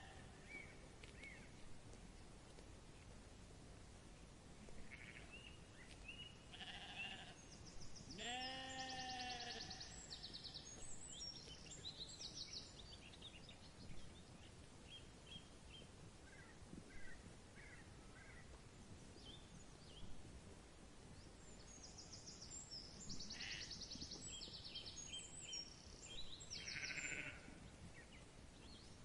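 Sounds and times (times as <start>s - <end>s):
sheep bleating: 4.9s - 5.3s, 6.5s - 7.4s, 8.2s - 10.0s, 23.4s - 23.7s, 26.6s - 27.6s
birds chirping: 4.9s - 18.4s, 21.2s - 29.0s.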